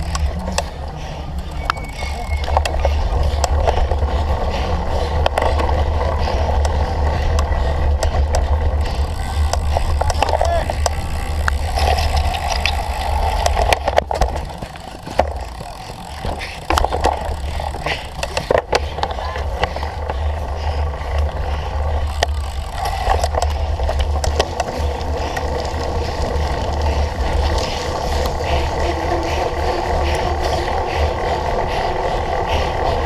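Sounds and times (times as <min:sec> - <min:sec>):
bike chain and frame rattling: 0:00.0 - 0:33.0
bike tyres rolling over rough ground: 0:00.0 - 0:33.0.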